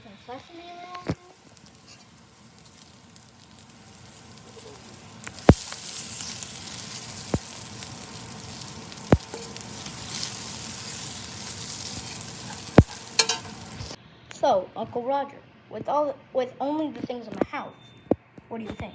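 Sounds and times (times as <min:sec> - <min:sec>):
food frying in a pan: 0:00.0 - 0:14.0
utensil knocking against pan: 0:12.8 - 0:13.8.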